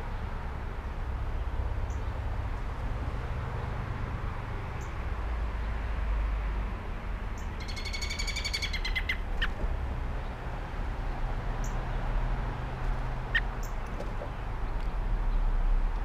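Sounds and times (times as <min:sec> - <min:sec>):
songbird chattering trill: 0:07.4 - 0:09.2
bird call notes: 0:07.4 - 0:09.5.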